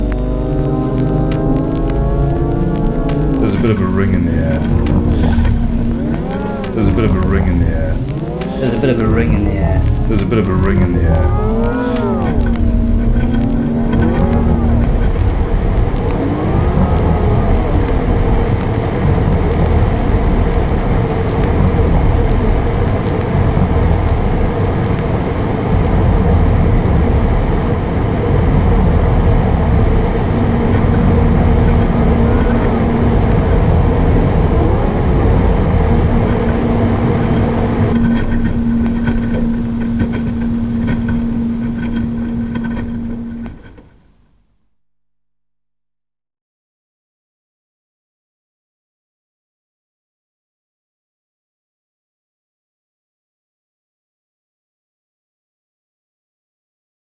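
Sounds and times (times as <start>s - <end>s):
dense rumbling noise: 0.0s - 44.8s
steady droning tones: 0.0s - 44.8s.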